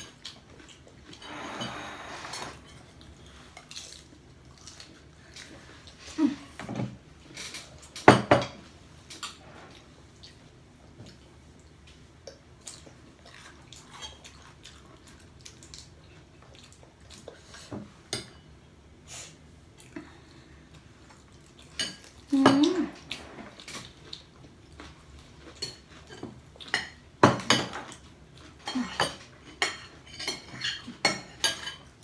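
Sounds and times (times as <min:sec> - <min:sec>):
cutlery clinking on plates: 0:25.5 - 0:31.9
dishes clattering: 0:25.6 - 0:28.0, 0:28.6 - 0:31.9.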